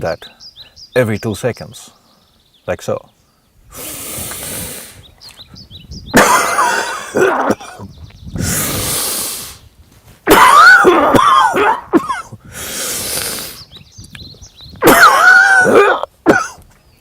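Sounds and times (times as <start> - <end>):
man breathing deeply with a hiss: 3.7 - 5.1, 8.4 - 9.7, 12.4 - 13.7
man coughing hard: 6.2 - 7.9, 10.3 - 12.3, 14.8 - 16.6.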